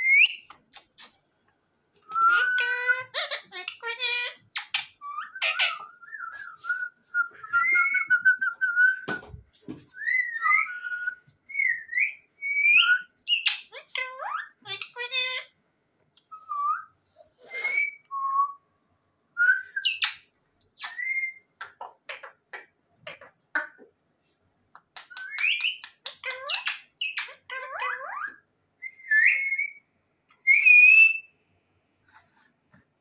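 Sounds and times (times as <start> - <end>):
bird whistling and chirping: 0.0 - 1.1, 2.0 - 3.8, 4.6 - 9.3, 9.9 - 14.6, 16.2 - 18.6, 19.4 - 21.5, 25.0 - 31.3.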